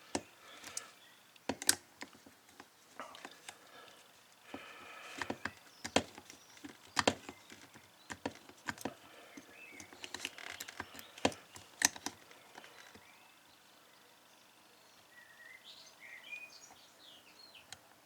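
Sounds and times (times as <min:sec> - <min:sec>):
lock clicking under a pick: 0:01.4 - 0:02.2, 0:05.2 - 0:08.9, 0:09.8 - 0:12.2.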